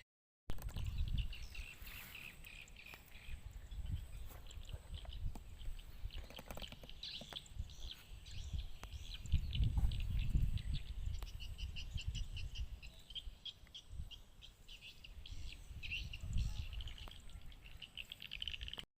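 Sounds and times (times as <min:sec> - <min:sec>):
bird chirping rapidly: 0:00.5 - 0:18.8.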